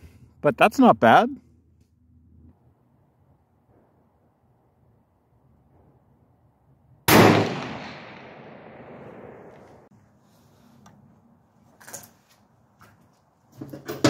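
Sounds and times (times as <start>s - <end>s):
gunshot with echo: 7.1s - 9.6s.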